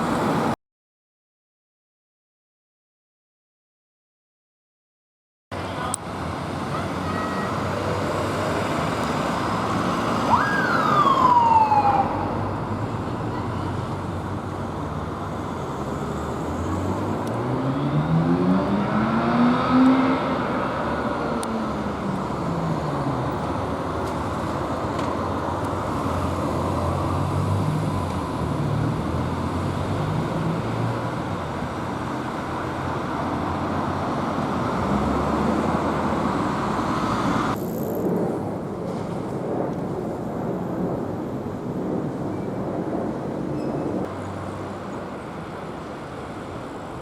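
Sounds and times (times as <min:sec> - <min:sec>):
road traffic noise: 0:00.0 - 0:00.6, 0:05.5 - 0:47.0
vehicle engine revving: 0:16.6 - 0:22.5.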